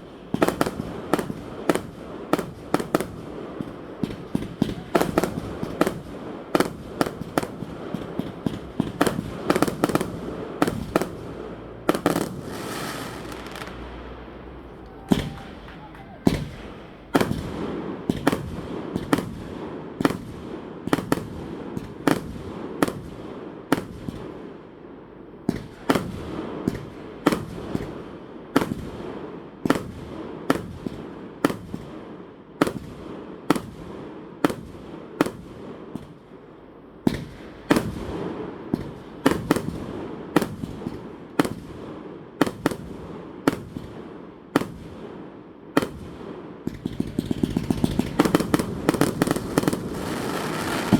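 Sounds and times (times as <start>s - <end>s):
fireworks bursting: 0.0s - 24.5s, 25.5s - 32.0s, 32.6s - 50.9s
rumbling echo: 7.6s - 17.8s.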